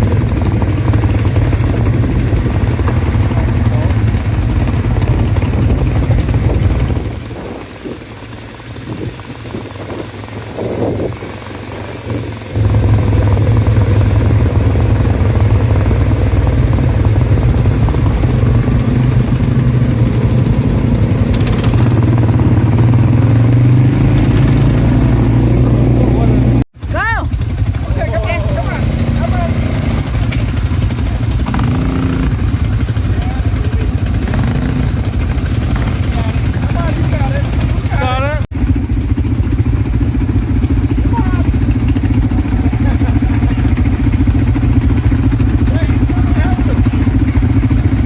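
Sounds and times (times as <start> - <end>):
atv engine running: 0.0 - 48.0.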